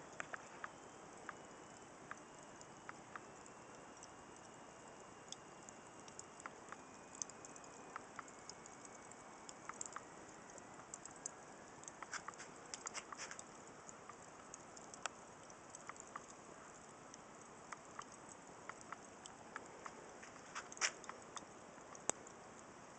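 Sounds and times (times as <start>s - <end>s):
soft steady hiss: 0.0s - 22.9s
wood fire crackling: 5.2s - 22.9s.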